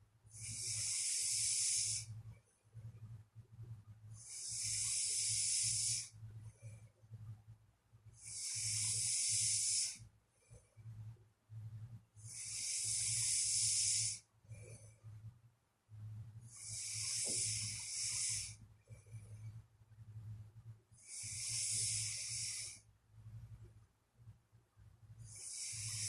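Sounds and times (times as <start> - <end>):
person snoring: 0.4 - 2.1, 4.2 - 6.1, 8.2 - 10.0, 12.2 - 14.2, 16.5 - 18.6, 21.0 - 22.8, 25.3 - 26.0.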